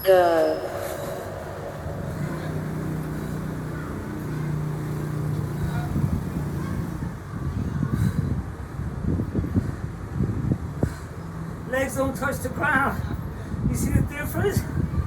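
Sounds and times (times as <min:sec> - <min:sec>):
steady low hum: 0:00.0 - 0:06.1
wind buffeting microphone: 0:00.0 - 0:15.0.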